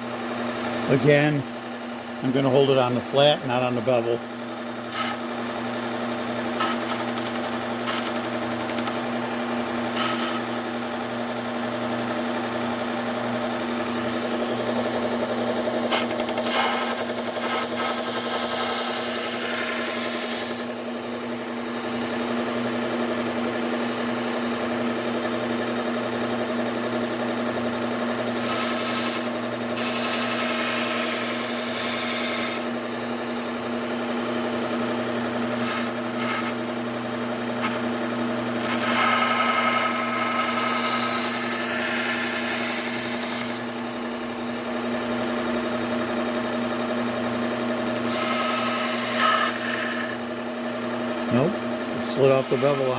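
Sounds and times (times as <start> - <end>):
belt sander humming: 0.0 - 52.9
knife blade rasping on sander belt: 48.0 - 50.2, 52.0 - 52.9.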